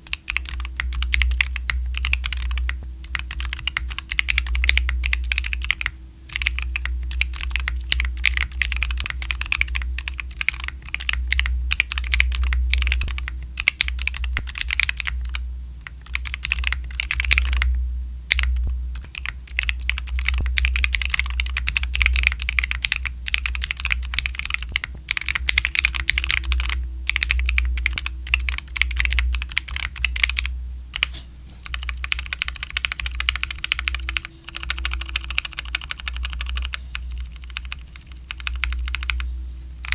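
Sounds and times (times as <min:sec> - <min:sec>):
fast typing on mechanical keyboard: 0:00.0 - 0:17.7, 0:18.3 - 0:39.2
steady low hum: 0:00.0 - 0:39.9.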